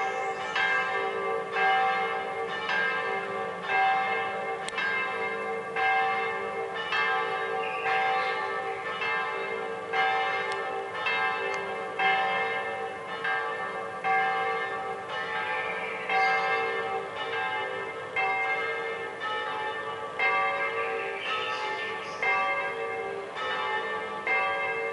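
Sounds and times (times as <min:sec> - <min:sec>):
church bells ringing: 0:00.0 - 0:24.9.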